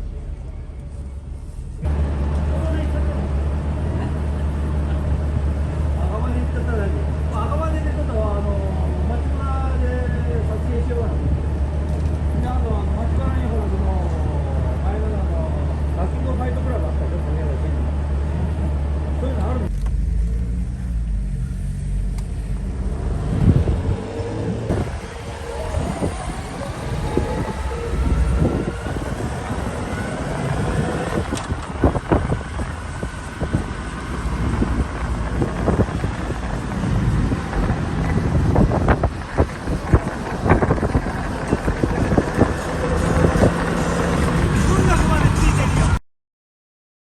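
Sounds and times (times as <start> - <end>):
motorcycle engine accelerating: 0.0 - 46.0
wind buffeting microphone: 2.6 - 15.8, 22.2 - 45.9.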